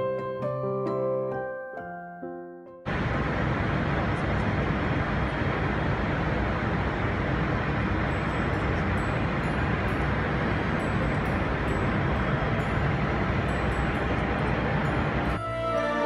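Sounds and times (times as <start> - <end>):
piano music: 0.0 - 3.0, 8.9 - 16.0
aircraft cabin noise: 2.9 - 16.0.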